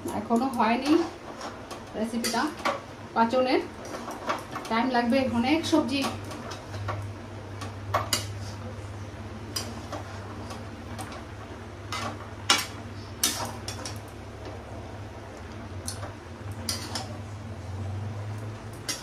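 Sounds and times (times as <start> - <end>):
steady low hum: 0.0 - 19.0
spoon stirring and scraping a pan: 0.2 - 2.8, 3.7 - 4.9, 5.6 - 14.6, 15.4 - 17.4, 18.7 - 19.0.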